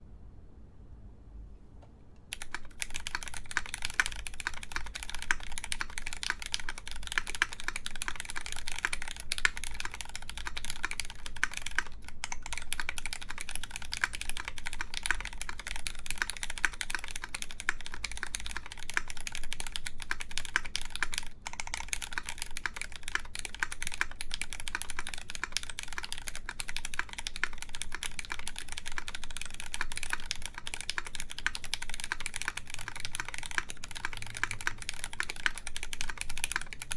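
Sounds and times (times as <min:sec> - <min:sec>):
mechanical keyboard typing: 0:02.3 - 0:36.9.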